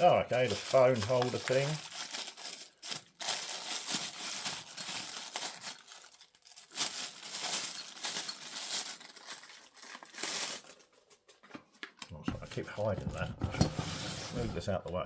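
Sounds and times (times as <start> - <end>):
plastic packaging crinkling: 0.0 - 11.1.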